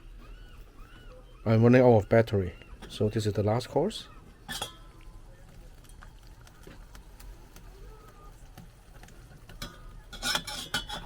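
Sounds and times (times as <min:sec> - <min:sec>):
tableware clicking and clinking: 0:04.5 - 0:04.9, 0:09.5 - 0:11.0.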